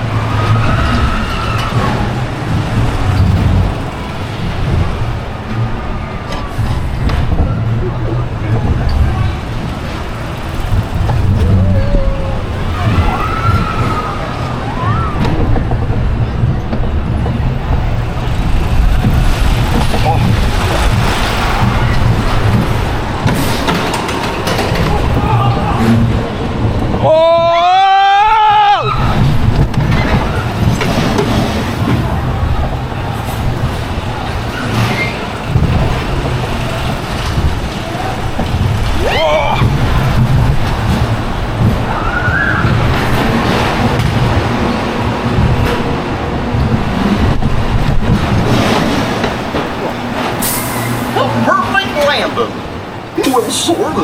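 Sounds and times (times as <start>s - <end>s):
low rumble: 0.0s - 27.8s
crowd voices: 0.0s - 54.0s.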